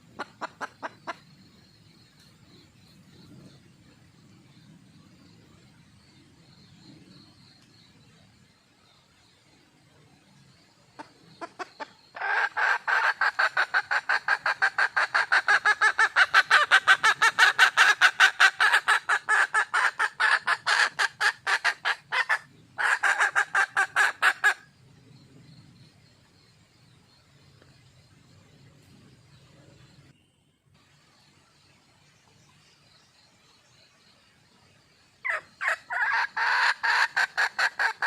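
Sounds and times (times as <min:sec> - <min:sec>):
hen clucking: 0:00.0 - 0:01.2, 0:11.0 - 0:24.6, 0:35.3 - 0:38.0.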